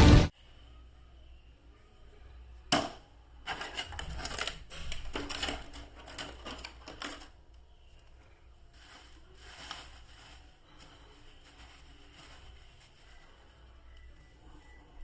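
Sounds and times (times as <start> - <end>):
plastic packaging crackling: 3.5 - 14.2.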